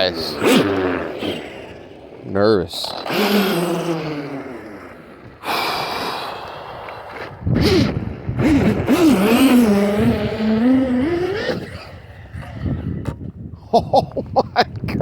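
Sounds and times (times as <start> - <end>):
electric motor whining: 0.0 - 12.7.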